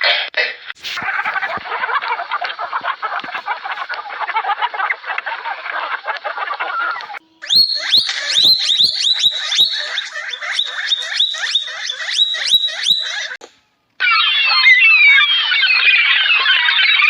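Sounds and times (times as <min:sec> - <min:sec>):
animal short sharp high calls: 0:06.6 - 0:13.4.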